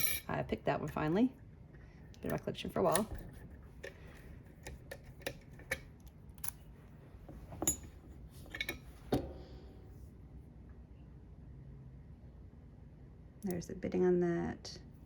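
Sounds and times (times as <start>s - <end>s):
metal lock clicks and clinks: 4.6s - 6.6s, 7.6s - 9.4s.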